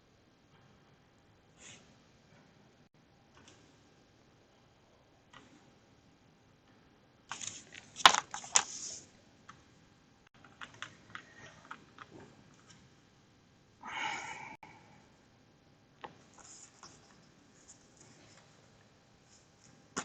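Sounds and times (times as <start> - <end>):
cardstock rustling: 7.3 - 9.0.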